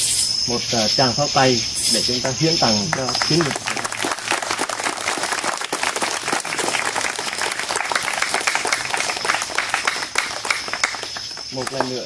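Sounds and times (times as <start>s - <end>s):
crowd applauding: 2.0s - 12.0s.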